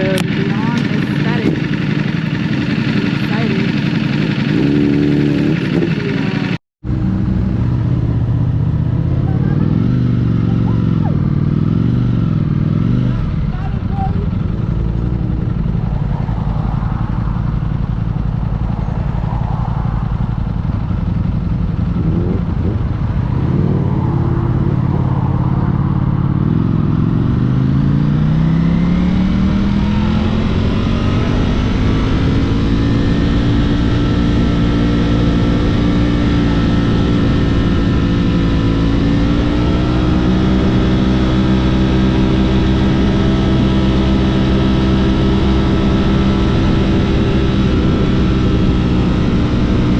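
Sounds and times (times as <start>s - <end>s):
motorcycle engine accelerating: 0.0s - 49.9s
wind noise: 12.9s - 49.9s.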